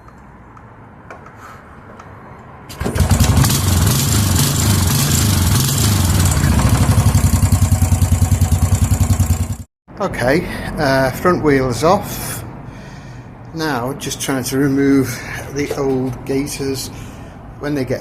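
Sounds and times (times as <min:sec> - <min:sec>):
motor throbbing: 0:02.8 - 0:09.5.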